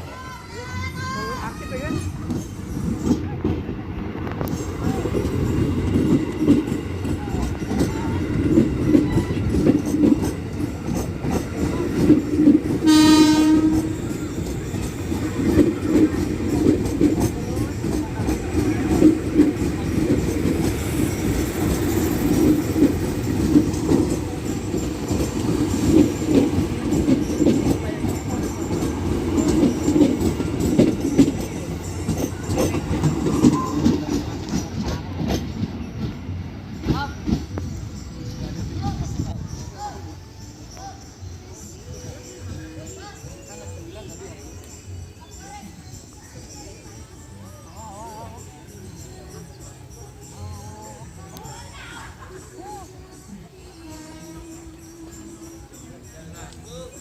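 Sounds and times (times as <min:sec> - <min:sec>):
train wheels clattering: 0:00.2 - 0:43.1
train horn blast: 0:12.8 - 0:14.2.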